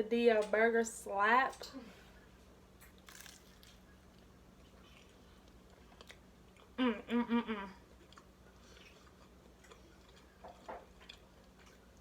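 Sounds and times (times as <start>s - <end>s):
woman humming appreciatively: 6.8s - 7.8s.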